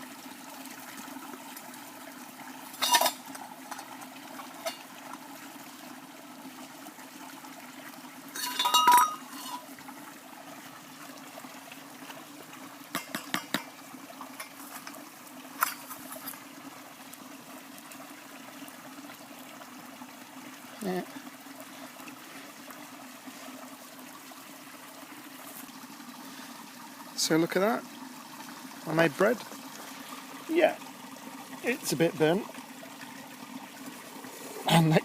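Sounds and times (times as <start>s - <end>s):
stream running: 0.0s - 35.0s
ringing metallic clank: 8.4s - 9.6s
sharp clinks and knocks: 8.4s - 9.6s.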